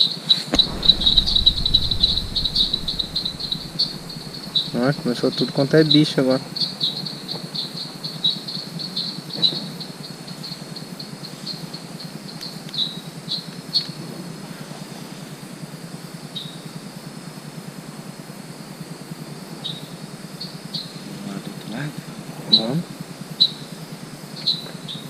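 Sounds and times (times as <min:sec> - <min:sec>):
steady low hum: 0:00.6 - 0:05.4.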